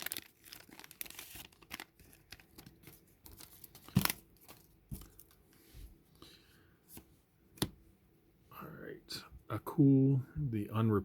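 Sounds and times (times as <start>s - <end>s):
foil wrapper tearing and crinkling: 0.0s - 4.7s.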